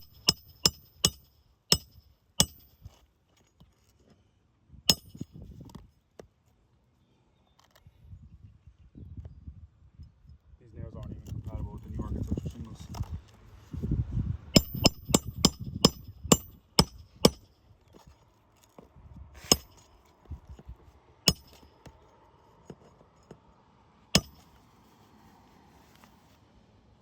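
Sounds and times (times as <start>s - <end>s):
hammer striking roofing nails: 0.0s - 2.7s, 4.9s - 5.2s, 14.6s - 17.4s, 19.4s - 19.8s, 21.3s - 21.6s, 24.2s - 24.5s.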